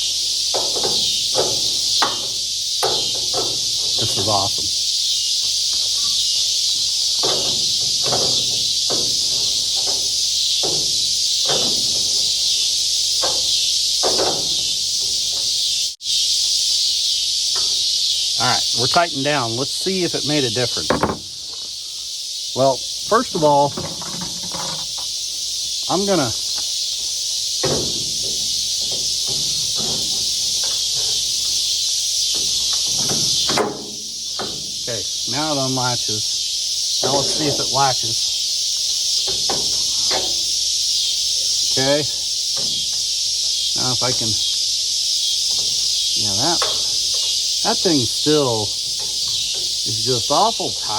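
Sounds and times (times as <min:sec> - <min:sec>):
latch clicks and knocks: 0:00.0 - 0:04.7, 0:05.7 - 0:15.6, 0:20.8 - 0:21.6, 0:23.2 - 0:25.1, 0:27.6 - 0:36.0, 0:37.0 - 0:38.1, 0:39.2 - 0:40.7, 0:41.3 - 0:43.2, 0:45.4 - 0:50.9
high-pitched insect chorus: 0:00.0 - 0:50.9
loud high-pitched hiss: 0:00.0 - 0:50.9.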